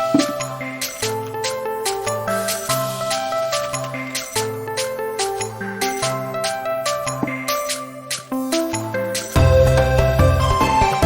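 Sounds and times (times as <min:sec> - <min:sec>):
gentle instrumental music: 0:00.0 - 0:11.0.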